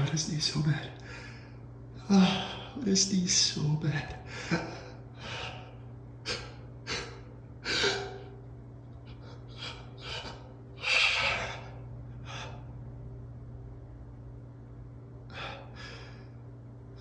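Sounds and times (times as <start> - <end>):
man gasping breaths: 4.3 - 8.2.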